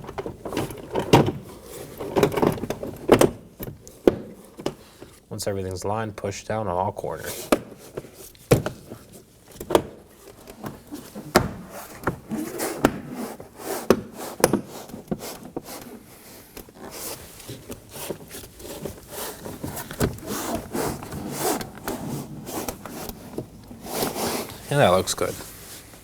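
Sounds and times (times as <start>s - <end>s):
panel scraping against door: 10.3s - 25.2s.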